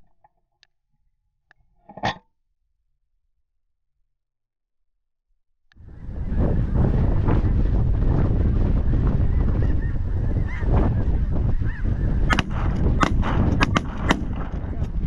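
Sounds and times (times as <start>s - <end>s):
wind on microphone: 5.8s - 15.0s
shotgun shots: 12.3s - 15.0s.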